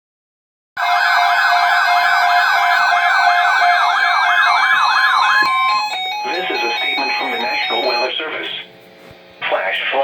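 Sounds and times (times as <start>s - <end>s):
warbling emergency alert tone: 0.8s - 8.6s.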